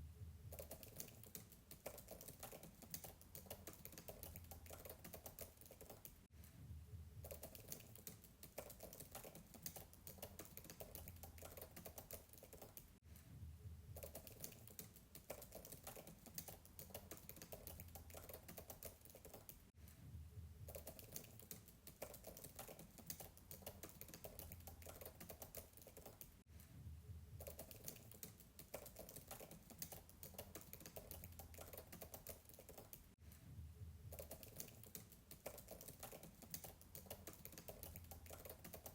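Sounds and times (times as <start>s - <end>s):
fast typing on keyboard: 0.5s - 6.3s, 7.2s - 13.0s, 14.0s - 19.7s, 20.7s - 26.4s, 27.4s - 33.2s, 34.1s - 38.9s.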